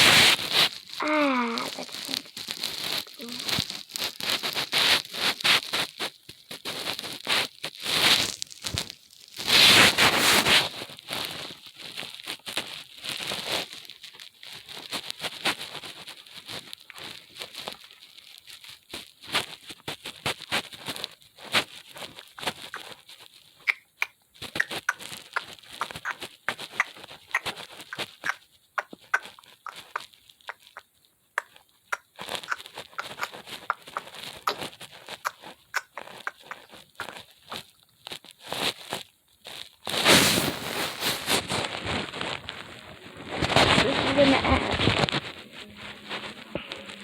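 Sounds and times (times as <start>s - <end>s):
fidget toys clicking and popping: 23.6s - 37.3s.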